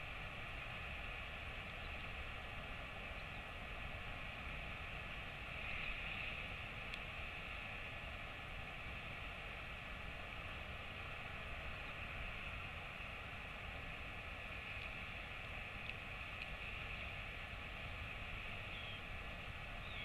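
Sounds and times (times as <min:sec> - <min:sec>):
faint clicks: 0:06.8 - 0:07.1, 0:14.6 - 0:16.8.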